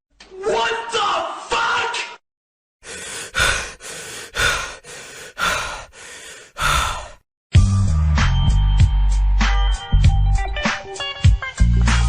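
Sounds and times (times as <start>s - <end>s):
person breathing heavily: 2.8s - 7.3s.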